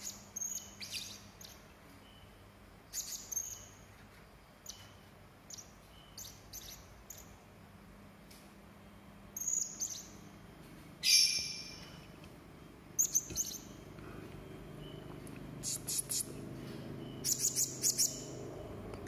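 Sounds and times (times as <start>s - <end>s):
parrot chirping: 0.0s - 2.2s, 2.9s - 3.9s, 5.5s - 7.4s, 9.4s - 10.3s, 11.0s - 12.0s, 13.0s - 13.8s, 15.6s - 16.4s, 17.0s - 18.5s.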